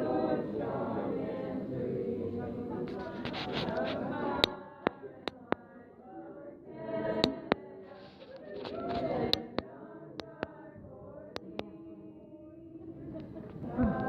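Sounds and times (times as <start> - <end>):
voices singing: 0.0 - 14.0.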